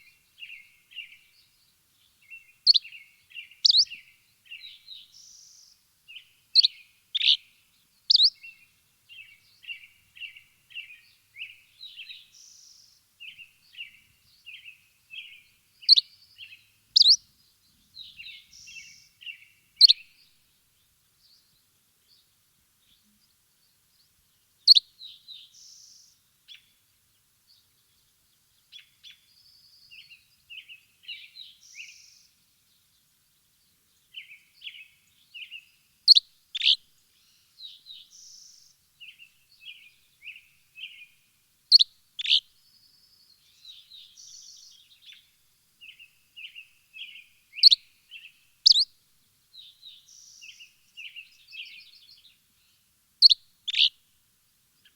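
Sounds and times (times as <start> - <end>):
songbirds twittering: 0.0 - 48.9, 49.5 - 54.0
loud sharp bird chirps: 3.6 - 3.9, 8.1 - 8.4, 17.0 - 17.2, 36.1 - 36.8, 41.7 - 42.4, 46.4 - 48.9, 53.2 - 53.9.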